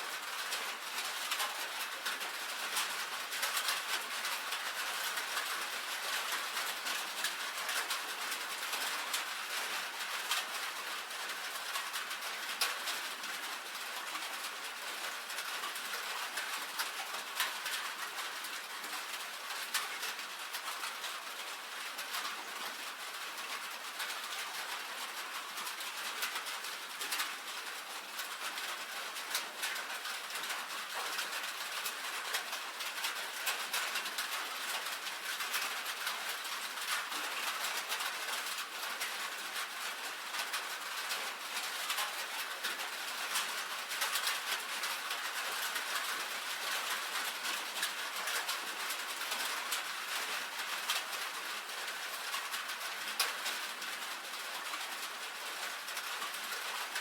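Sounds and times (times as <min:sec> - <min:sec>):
rain on a tin roof: 0:00.0 - 0:57.0.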